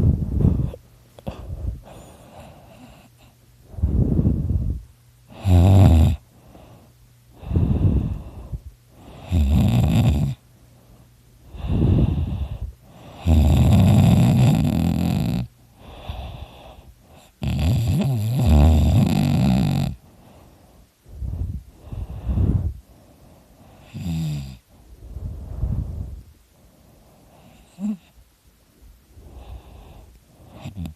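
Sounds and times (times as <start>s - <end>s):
person snoring loudly: 5.3s - 6.2s, 9.1s - 10.4s, 13.2s - 16.4s, 17.4s - 20.0s, 23.9s - 24.6s.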